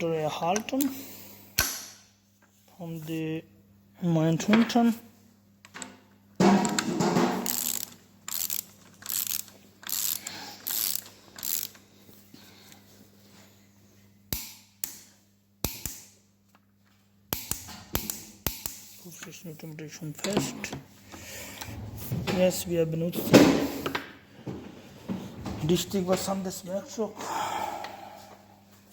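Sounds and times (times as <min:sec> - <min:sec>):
ratchet wrench ratcheting: 0:07.4 - 0:11.8
torque wrench sharp clicks: 0:07.4 - 0:11.8, 0:14.3 - 0:16.1, 0:17.3 - 0:18.8.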